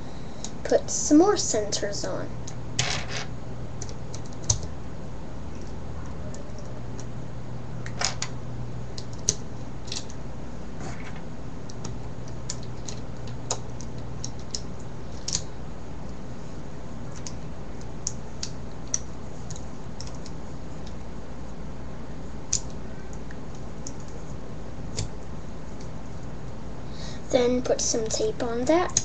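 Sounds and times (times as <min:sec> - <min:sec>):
steady low hum: 0:00.0 - 0:29.0
plastic puzzle pieces clicking: 0:11.7 - 0:15.4.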